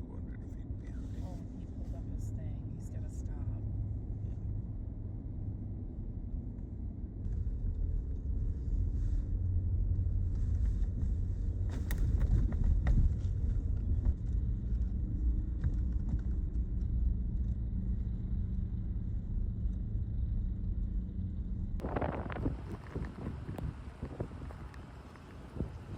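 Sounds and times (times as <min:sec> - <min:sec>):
road traffic rumble: 0:06.9 - 0:25.9.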